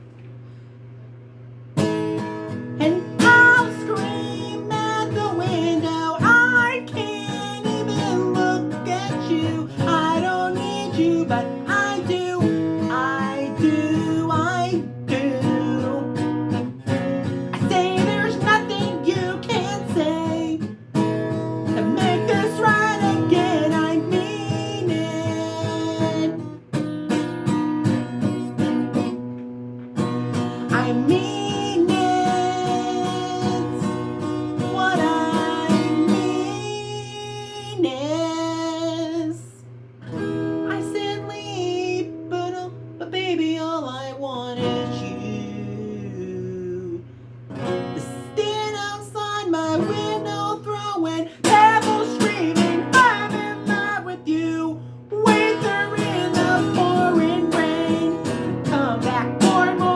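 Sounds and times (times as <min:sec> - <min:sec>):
acoustic guitar strummed: 0:01.6 - 0:59.9
person singing: 0:02.8 - 0:16.8, 0:17.5 - 0:20.8, 0:21.7 - 0:26.6, 0:30.6 - 0:39.7, 0:40.7 - 0:47.1, 0:48.0 - 0:59.9.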